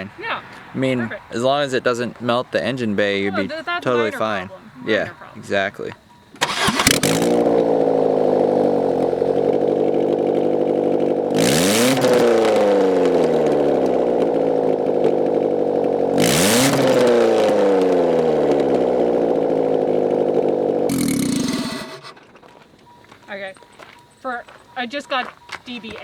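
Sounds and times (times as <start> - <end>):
car engine revving: 5.4 - 23.2.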